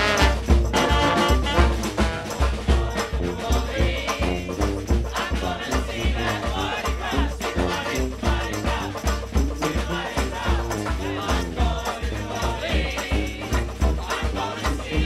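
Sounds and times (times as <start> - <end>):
heavy bass beat: 0.0 - 3.5
brass band music: 0.0 - 15.0.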